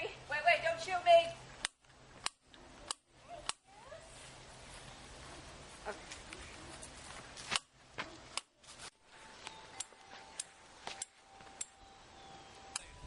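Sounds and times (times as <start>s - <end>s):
push-button igniter clicking: 12.7s - 12.9s.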